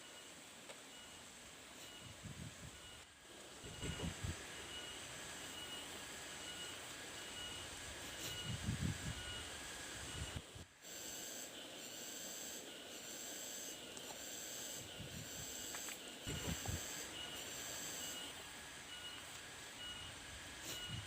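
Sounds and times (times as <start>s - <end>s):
insects calling in pulses: 10.9s - 21.0s.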